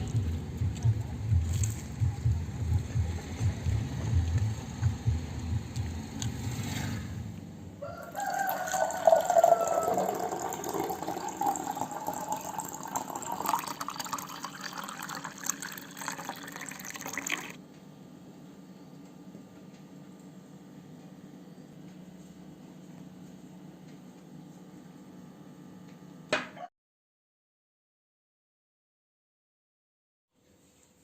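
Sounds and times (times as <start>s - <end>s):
water pouring into a container: 8.1s - 17.6s.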